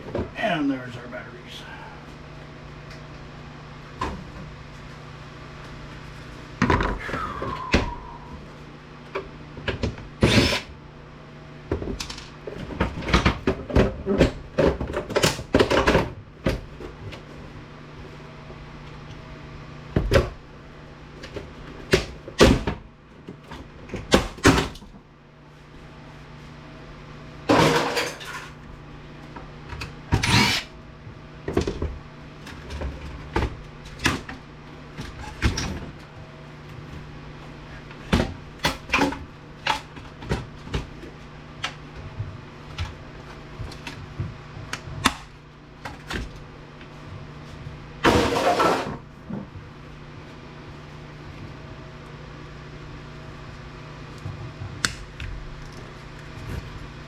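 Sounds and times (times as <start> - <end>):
steady low hum: 0.0 - 57.0
tools and metal parts clattering: 27.5 - 28.6.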